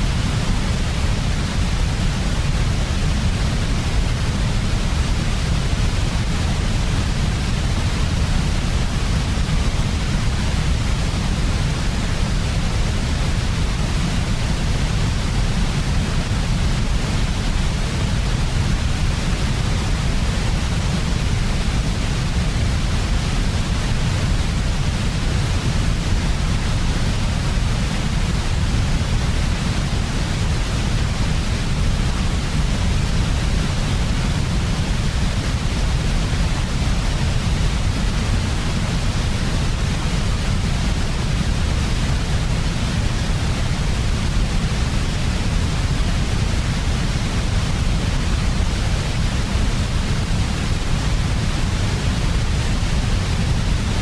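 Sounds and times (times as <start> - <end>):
white noise hiss: 0.0 - 54.0.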